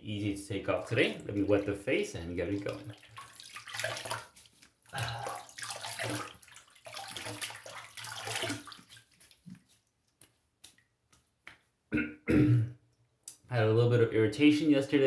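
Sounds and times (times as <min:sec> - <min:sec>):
water dripping: 0:00.5 - 0:11.2
water splashing on face: 0:00.9 - 0:09.8.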